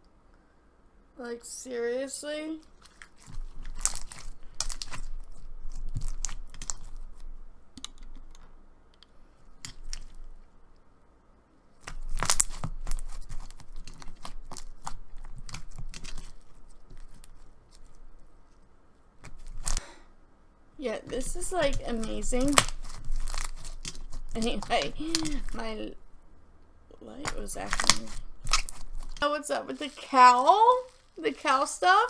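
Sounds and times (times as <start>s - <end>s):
slime with beads squeezed crunching: 2.6s - 7.4s, 9.5s - 10.4s, 11.8s - 18.2s, 19.2s - 19.9s, 20.8s - 26.0s, 27.0s - 32.0s.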